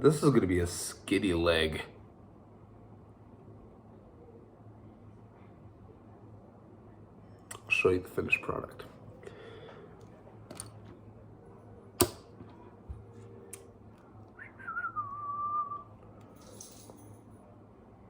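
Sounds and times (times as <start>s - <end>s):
plastic parts clicking: 10.5s - 10.9s.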